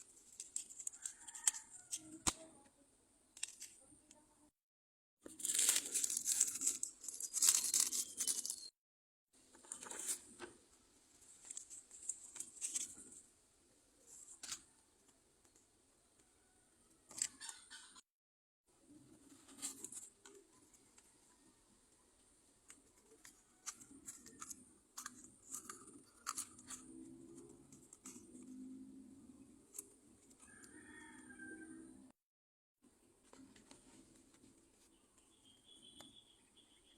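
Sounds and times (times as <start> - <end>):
handling clicks and crackles: 0.1 - 2.4, 22.7 - 28.4
packaging tearing and crinkling: 5.3 - 8.6
packaging rustling: 5.3 - 8.7.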